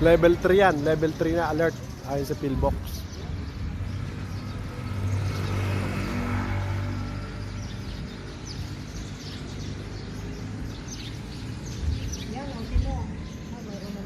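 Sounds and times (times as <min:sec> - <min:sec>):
birds chirping: 0:00.0 - 0:14.0
vehicle engine passing: 0:03.3 - 0:13.4.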